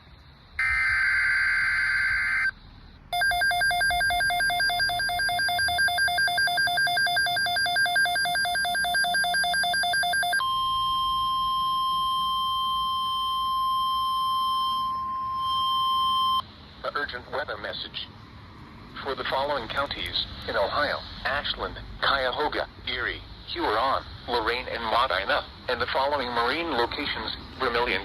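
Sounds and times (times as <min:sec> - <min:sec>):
warbling two-tone alert: 0:00.6 - 0:02.5, 0:03.2 - 0:16.4
harsh data screech: 0:00.6 - 0:02.6
steady warning alarm tone: 0:00.6 - 0:16.4.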